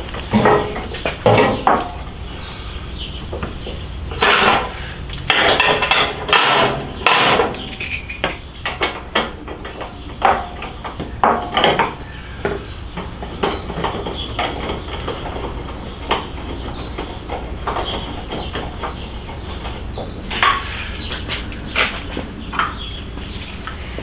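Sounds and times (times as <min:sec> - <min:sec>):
metal tools clinking and knocking: 0:00.3 - 0:02.2, 0:04.2 - 0:12.0, 0:16.4 - 0:24.0.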